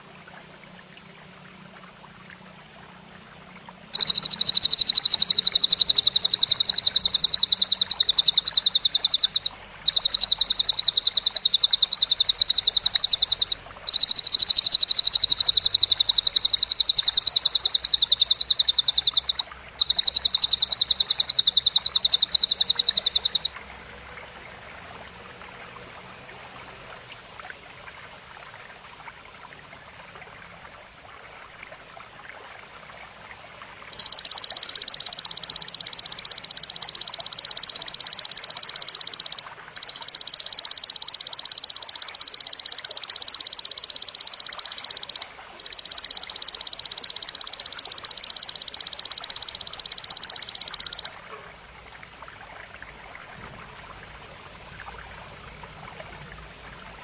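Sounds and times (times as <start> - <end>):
faint background hiss: 0.0 - 57.0
rapid buzzing bird trill: 4.0 - 23.6, 33.9 - 51.5.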